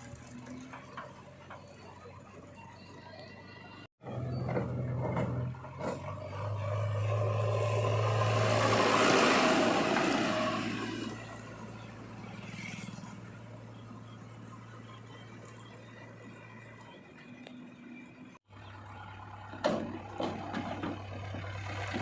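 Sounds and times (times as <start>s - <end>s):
heavy diesel engine revving: 4.0s - 13.2s.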